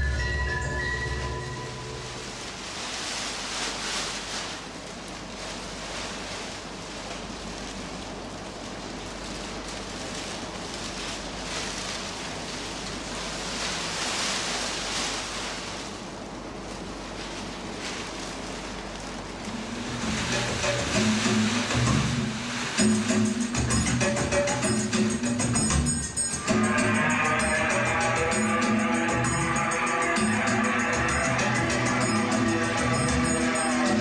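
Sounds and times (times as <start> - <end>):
ocean waves washing: 19.4 - 24.3.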